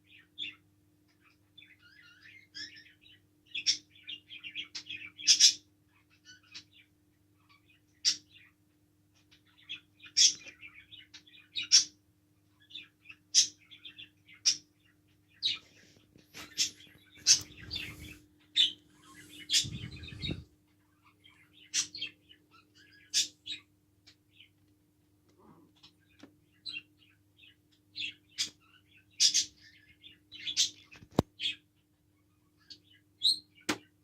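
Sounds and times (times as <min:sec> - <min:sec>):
faint steady hum: 0:00.0 - 0:33.6
bird chirping: 0:09.2 - 0:24.6.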